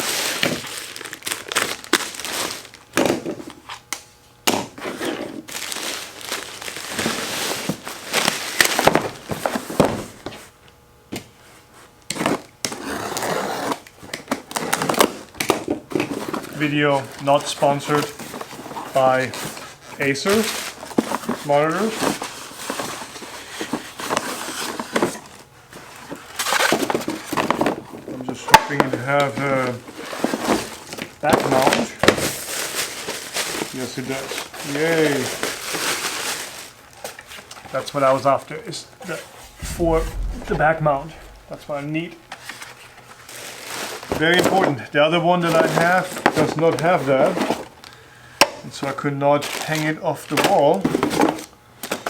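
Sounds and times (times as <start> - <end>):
packaging crinkling and rustling: 0.0 - 2.9, 5.5 - 9.7, 30.0 - 37.2
knocks and scrapes: 39.4 - 42.0.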